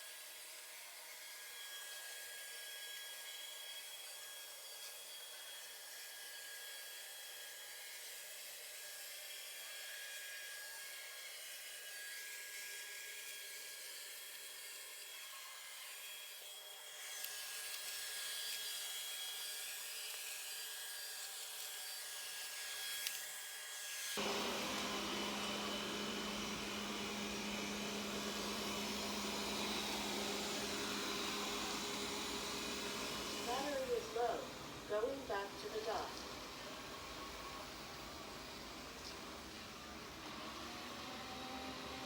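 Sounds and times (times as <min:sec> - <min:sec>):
robot vacuum whirring: 0:24.1 - 0:42.0.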